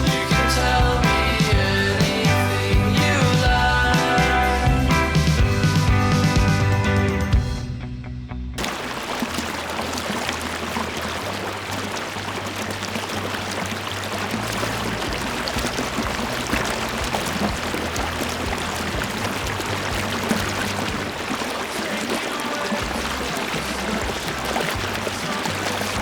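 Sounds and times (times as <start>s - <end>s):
waterfall pouring: 8.6s - 26.0s.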